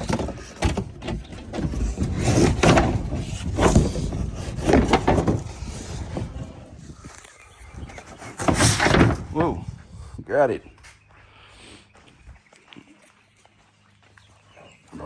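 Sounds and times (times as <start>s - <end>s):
parts rubbing and scraping: 0.0s - 9.7s.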